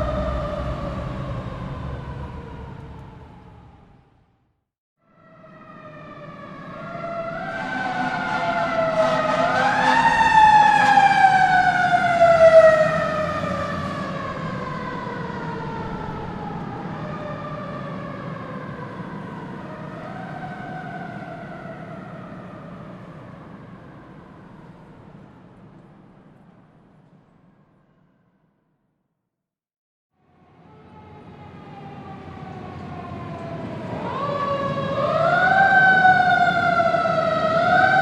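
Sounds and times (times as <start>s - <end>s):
fire engine siren wailing: 0.0s - 4.3s, 5.0s - 25.8s, 30.2s - 38.0s
low rumble: 0.0s - 4.4s.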